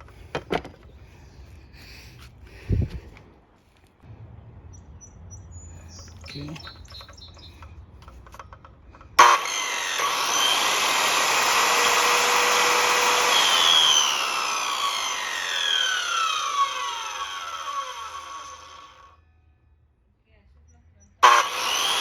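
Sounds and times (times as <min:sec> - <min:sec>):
circular saw cutting wood: 0:09.2 - 0:19.2, 0:21.2 - 0:22.0
saw motor winding down: 0:09.2 - 0:19.2, 0:21.2 - 0:22.0.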